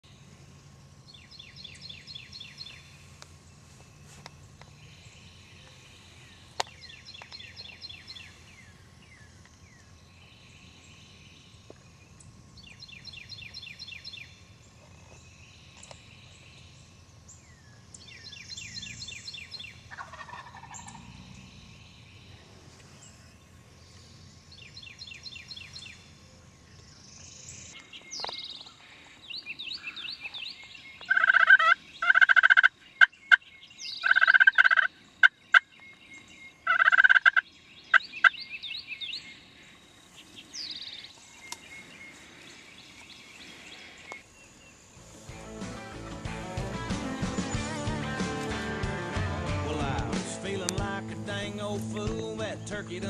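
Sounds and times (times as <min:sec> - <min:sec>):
turkey gobbling: 0:19.9 - 0:21.1, 0:31.0 - 0:33.4, 0:34.0 - 0:35.6, 0:36.6 - 0:38.4.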